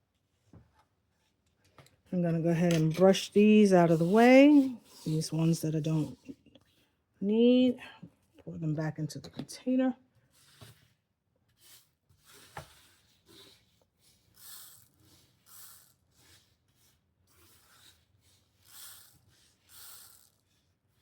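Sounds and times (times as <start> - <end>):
brush sweeping rhinestones: 2.6 - 6.4, 11.6 - 20.6.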